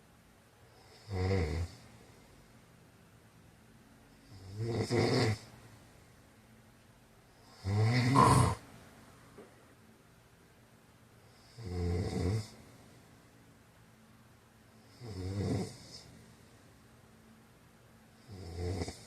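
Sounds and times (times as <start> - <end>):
man snoring: 0.8 - 1.8, 4.2 - 5.5, 7.4 - 8.6, 11.4 - 12.6, 14.9 - 16.1, 18.2 - 19.0.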